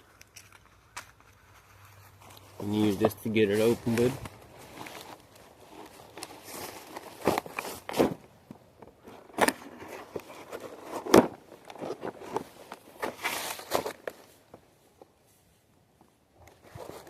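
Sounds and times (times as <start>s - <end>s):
packaging rustling: 2.0s - 8.2s, 9.1s - 14.4s.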